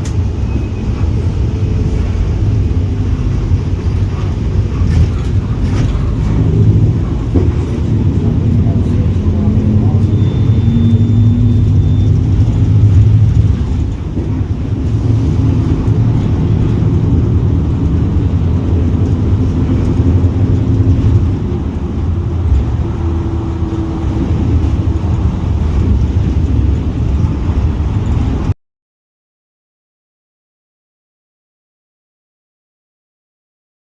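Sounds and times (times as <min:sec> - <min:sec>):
bus diesel engine running: 0:00.0 - 0:28.6.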